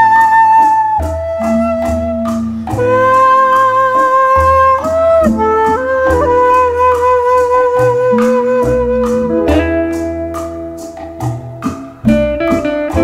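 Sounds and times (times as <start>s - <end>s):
bass line: 0.0s - 13.0s.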